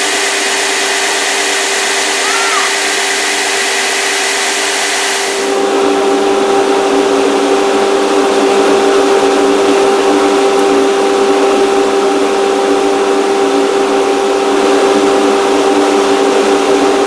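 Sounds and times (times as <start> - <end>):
power tool motor humming: 0.0 - 5.6.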